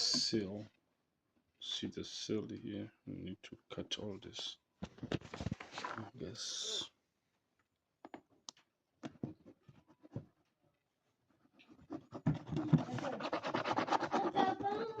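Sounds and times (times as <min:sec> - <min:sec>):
rapid scratching cutting packaging seal: 0:12.2 - 0:14.7.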